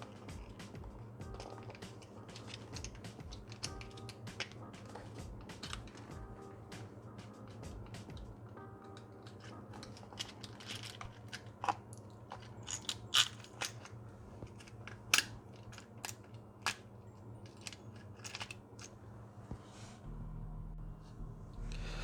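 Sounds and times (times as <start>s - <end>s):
metal tools clicking: 0.0s - 6.2s, 8.9s - 19.0s
faint steady hum: 0.0s - 22.0s.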